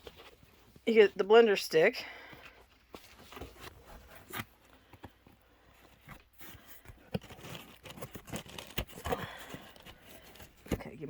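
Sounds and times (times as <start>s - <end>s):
packaging rustling: 2.7s - 11.0s.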